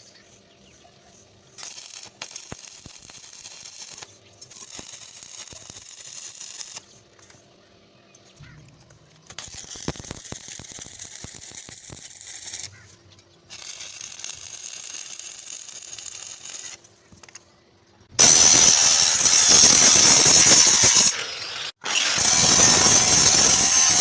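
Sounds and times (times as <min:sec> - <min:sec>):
power tool working metal: 0:18.2 - 0:24.0.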